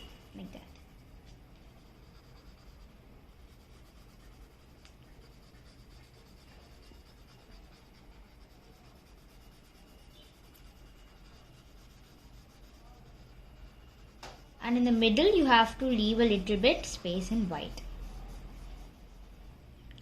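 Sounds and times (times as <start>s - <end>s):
low steady hum: 0.0s - 20.0s
blending stump rubbing paper: 3.5s - 15.8s, 16.4s - 19.6s.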